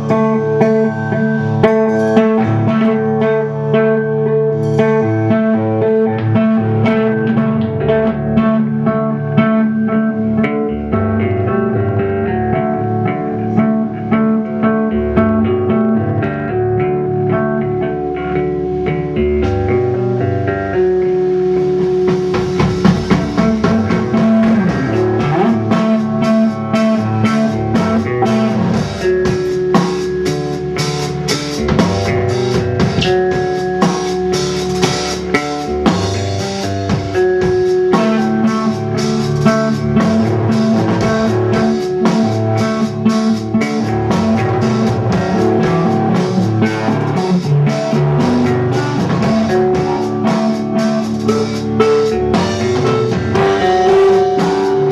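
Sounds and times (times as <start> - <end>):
drum kit and cymbals: 0.0 - 11.2, 18.1 - 54.9
bass guitar: 0.0 - 54.9
electric guitar riff: 0.0 - 54.9.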